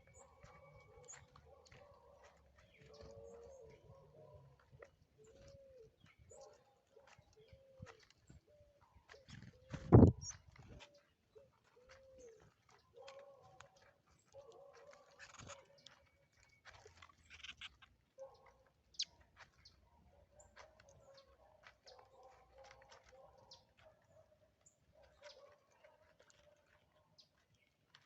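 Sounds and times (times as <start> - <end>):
low bird calls: 14.4 - 19.2
short high bird chirps: 17.3 - 17.8.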